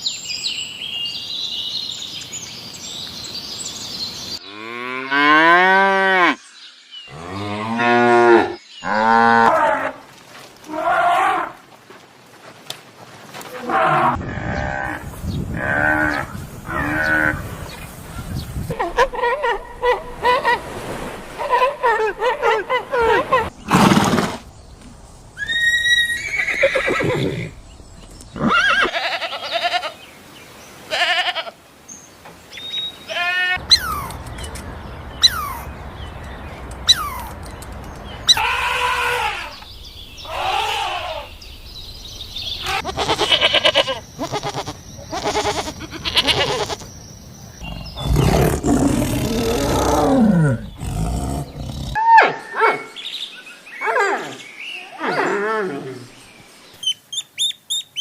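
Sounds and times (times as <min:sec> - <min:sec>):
farm animal calls: 0:33.1 - 0:34.3, 0:35.2 - 0:35.7, 0:36.8 - 0:37.4, 0:38.2 - 0:41.4, 0:42.6 - 0:47.0.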